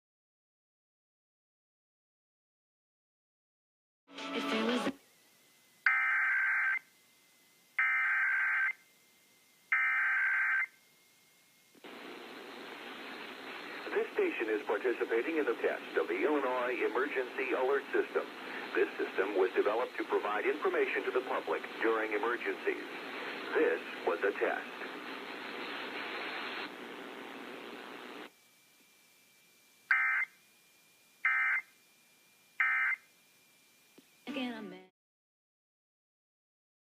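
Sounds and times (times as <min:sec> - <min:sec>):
broadcast hiss: 0:04.6 - 0:34.9.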